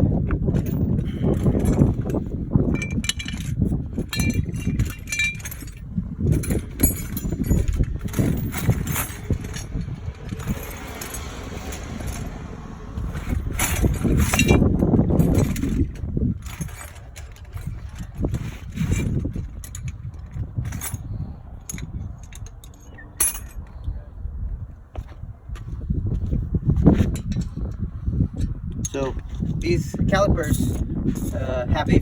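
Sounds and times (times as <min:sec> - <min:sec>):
hand tools clinking: 0:00.6 - 0:12.4, 0:13.0 - 0:23.8
handling and rustling: 0:13.0 - 0:23.8.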